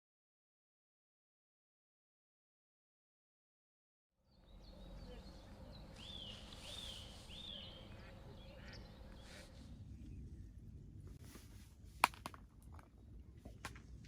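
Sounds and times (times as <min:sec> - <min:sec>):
bird calling: 0:04.3 - 0:09.8
low steady rumble: 0:04.4 - 0:14.0.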